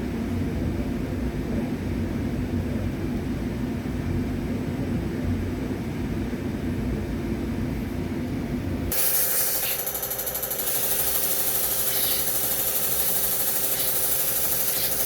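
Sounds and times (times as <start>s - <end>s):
loud high-pitched hiss: 8.9s - 9.9s
machine rumbling: 8.9s - 15.0s.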